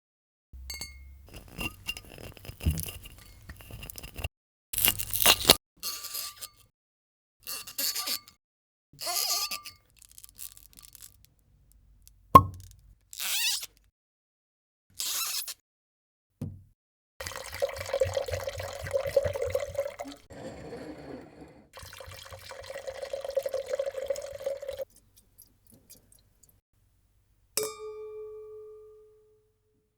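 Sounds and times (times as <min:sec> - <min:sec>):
light glassy ring: 0:00.7 - 0:02.0, 0:27.6 - 0:29.6
scraping and tearing: 0:02.1 - 0:05.6
wine pouring into a glass: 0:17.2 - 0:24.9
glasses clinking: 0:17.3 - 0:24.8.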